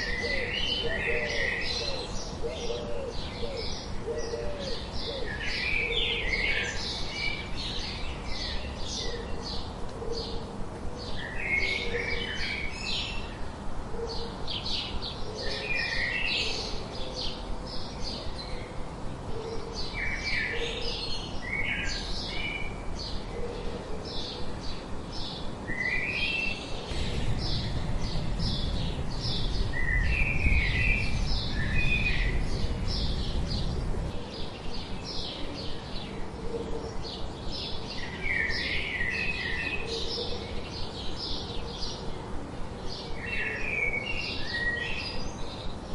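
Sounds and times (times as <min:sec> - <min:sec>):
low rumbling noise: 0:26.9 - 0:34.2
small birds chirping: 0:26.9 - 0:34.2.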